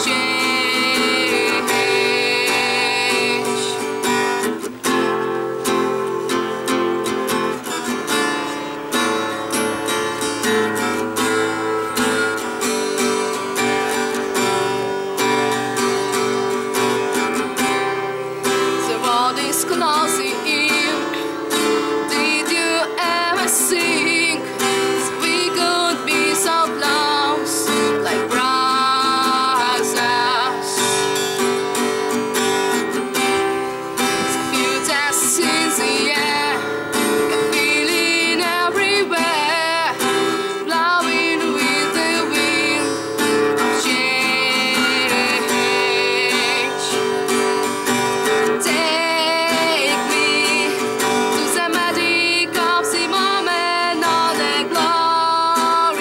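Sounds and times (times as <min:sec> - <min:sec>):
woman singing a rock song: 0:00.0 - 0:04.2, 0:18.7 - 0:31.2, 0:34.0 - 0:56.0
strummed acoustic guitar: 0:00.0 - 0:56.0.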